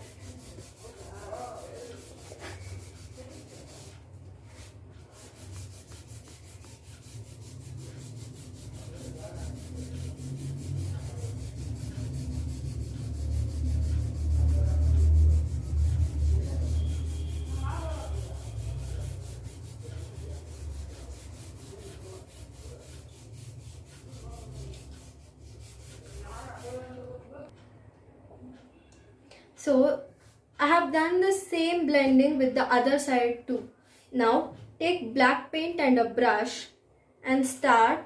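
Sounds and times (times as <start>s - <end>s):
tissue paper rubbing on paper: 0.0s - 27.2s.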